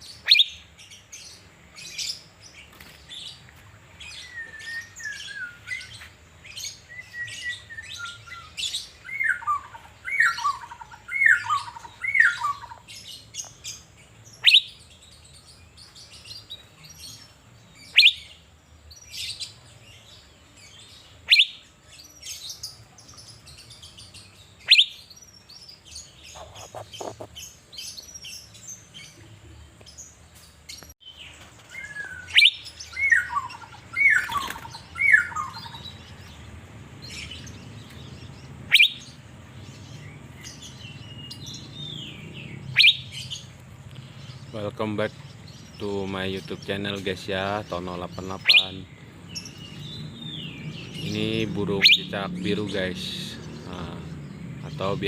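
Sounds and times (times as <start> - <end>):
bird whistles and sharp calls: 0.0 - 0.7, 4.0 - 15.0, 17.8 - 18.4, 21.2 - 22.8, 23.8 - 29.3, 31.6 - 36.3, 38.7 - 39.8, 40.4 - 43.5, 48.0 - 53.5
bird chirps: 0.0 - 55.0.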